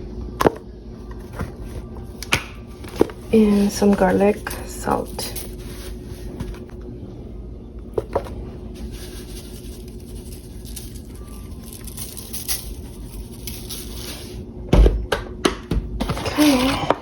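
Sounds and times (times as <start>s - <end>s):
steady low hum: 0.0s - 17.0s
salt grains pattering: 8.8s - 14.4s.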